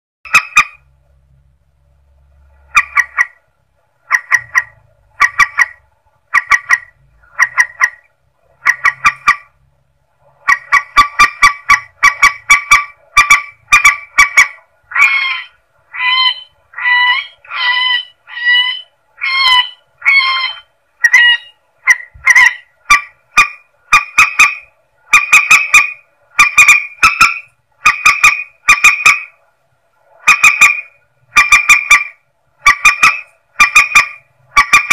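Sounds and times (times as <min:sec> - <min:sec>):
rail bird honking calls: 0:10.4 - 0:29.3, 0:30.2 - 0:34.9.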